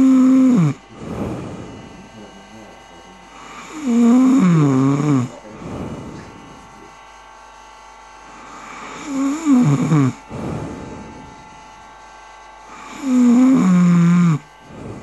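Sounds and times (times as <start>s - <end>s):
person snoring with moans: 0.0s - 2.1s, 3.4s - 6.7s, 8.3s - 11.5s, 12.7s - 15.0s.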